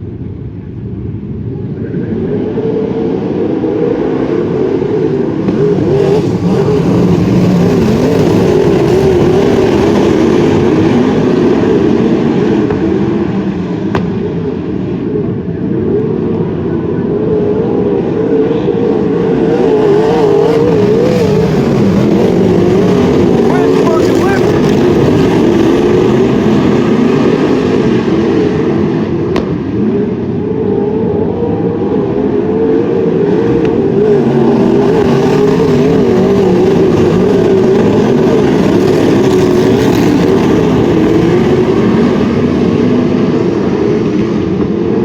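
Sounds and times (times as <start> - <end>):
race car engines running hard: 0.0 - 45.0.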